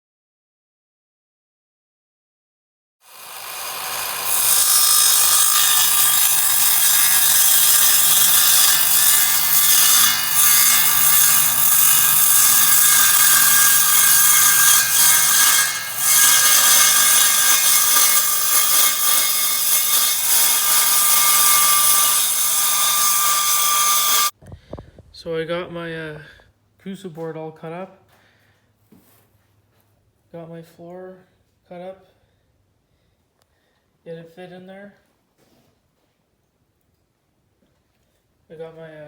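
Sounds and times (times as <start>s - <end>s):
power tool cutting board: 3.0s - 24.3s.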